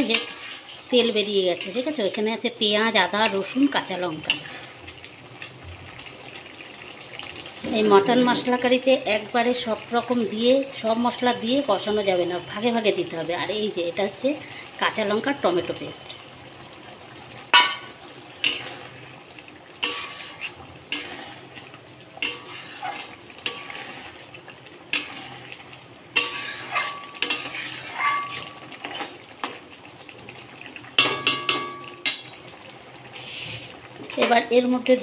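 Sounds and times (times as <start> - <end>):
metal spatula scraping a pan: 0.0 - 2.2, 17.6 - 18.9, 19.8 - 21.6, 22.2 - 24.2, 24.9 - 25.6, 26.2 - 29.2
faint sizzle: 0.0 - 35.0.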